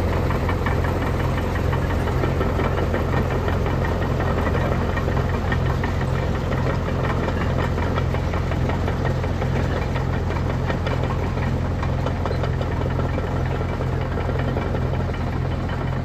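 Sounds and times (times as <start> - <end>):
engine humming steadily: 0.0 - 16.0.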